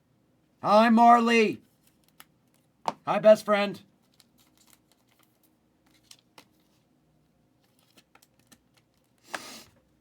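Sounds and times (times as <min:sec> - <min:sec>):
faint clicks of cards handled: 0:01.7 - 0:03.0, 0:04.0 - 0:06.9, 0:07.6 - 0:09.6.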